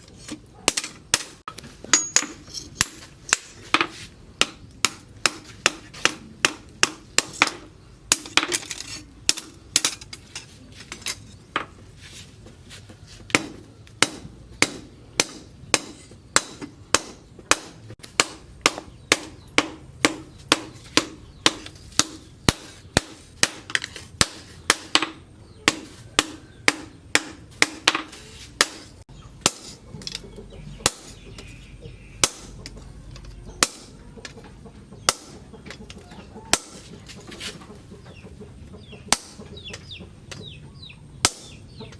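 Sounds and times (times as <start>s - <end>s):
hammer striking hot steel: 13.3s - 23.6s, 41.2s - 41.6s.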